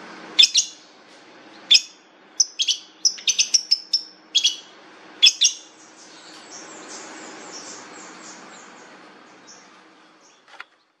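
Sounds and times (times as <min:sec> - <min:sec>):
bird twittering: 0:00.4 - 0:00.9, 0:01.5 - 0:10.5
bird calling sharp high notes: 0:01.7 - 0:05.7.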